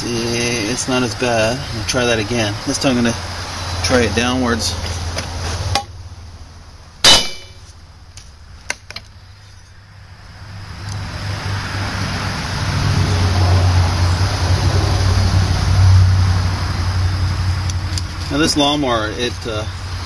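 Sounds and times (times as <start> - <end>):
low mechanical hum: 0.0 - 11.0
sledgehammer clanging on metal: 7.0 - 7.7.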